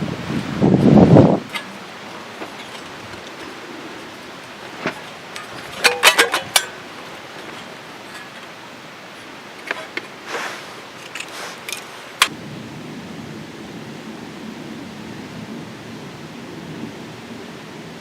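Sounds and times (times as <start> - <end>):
steady background hiss: 0.0 - 18.0
small hard objects clinking: 1.5 - 10.2.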